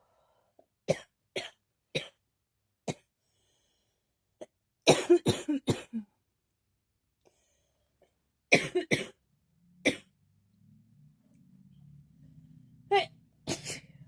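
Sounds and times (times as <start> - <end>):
person coughing: 4.9 - 6.1, 8.5 - 9.2, 13.0 - 14.0.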